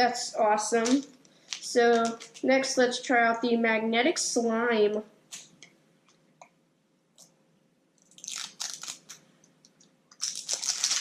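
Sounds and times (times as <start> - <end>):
packaging rustling: 0.8 - 2.5, 8.0 - 11.0.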